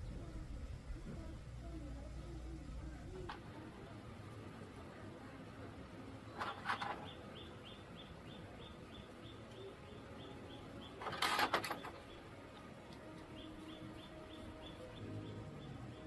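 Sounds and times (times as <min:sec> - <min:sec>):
small bird chirping: 0:06.3 - 0:12.4, 0:13.2 - 0:16.0
clattering bursts: 0:11.0 - 0:12.1.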